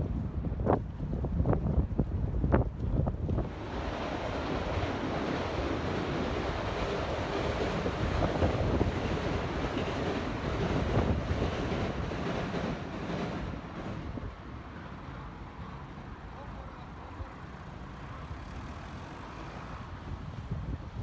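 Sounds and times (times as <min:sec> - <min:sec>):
wind buffeting microphone: 0:00.0 - 0:14.6, 0:19.7 - 0:21.0.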